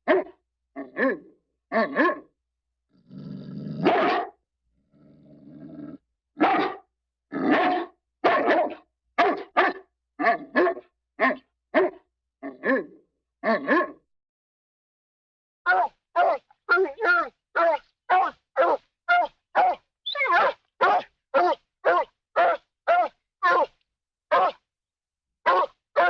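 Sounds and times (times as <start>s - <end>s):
dog barking: 0.0s - 0.4s, 1.9s - 2.3s, 3.8s - 4.4s, 6.4s - 13.0s, 13.6s - 14.0s, 15.7s - 24.6s, 25.4s - 26.0s
dog growling: 2.9s - 4.0s, 4.8s - 6.0s, 15.7s - 18.7s.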